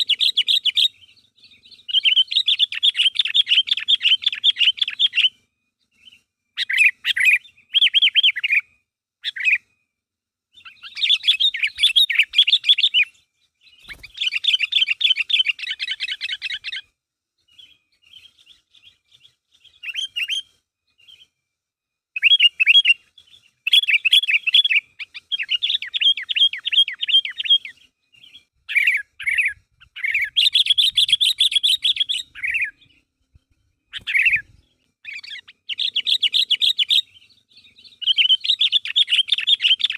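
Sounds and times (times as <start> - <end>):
bird chattering: 10.6 - 13.1, 13.8 - 16.8, 23.7 - 27.7, 28.7 - 32.8, 33.9 - 39.9.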